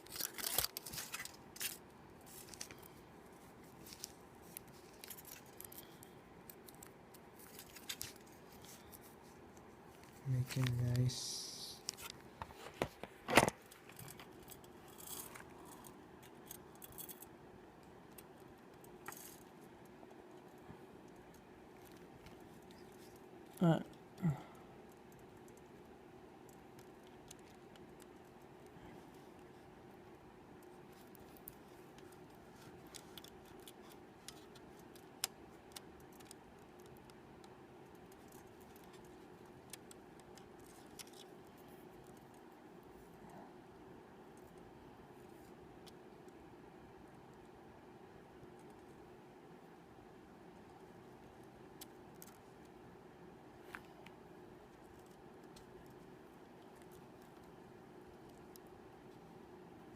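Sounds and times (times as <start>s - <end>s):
faint clicks and scrapes: 0.0s - 10.8s, 11.8s - 23.6s, 30.5s - 43.6s, 50.5s - 52.8s, 53.6s - 59.4s
steady low hum: 0.0s - 59.9s.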